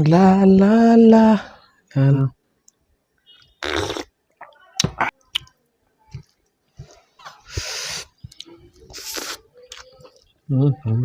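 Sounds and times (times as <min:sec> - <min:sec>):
hissing slurp: 0:08.9 - 0:09.5.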